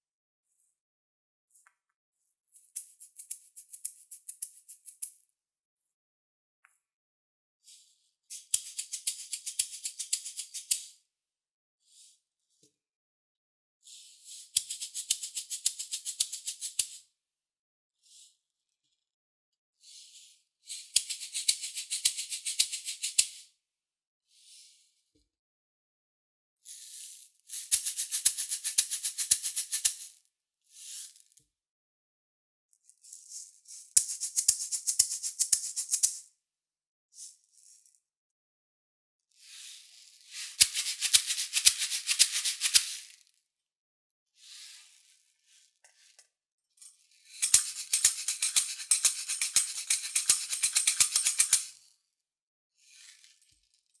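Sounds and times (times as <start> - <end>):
shaker played by hand: 2.6 - 5.2, 8.3 - 10.9, 14.6 - 17.0, 20.7 - 23.4, 27.5 - 30.2, 33.2 - 36.3, 40.3 - 43.2, 47.4 - 51.8.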